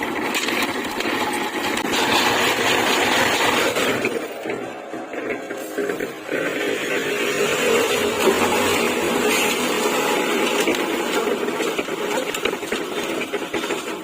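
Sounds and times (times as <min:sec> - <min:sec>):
concrete mixer motor running: 0:00.0 - 0:14.0.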